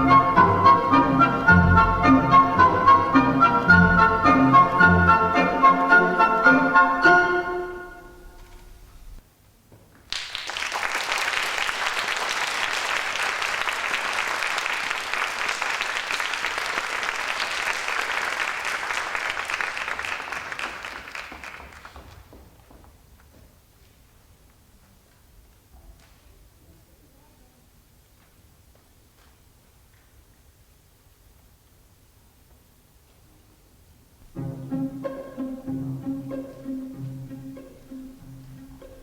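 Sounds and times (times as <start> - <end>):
orchestral ballet music: 0.0 - 8.9, 34.3 - 39.0
audience applause: 10.1 - 22.3.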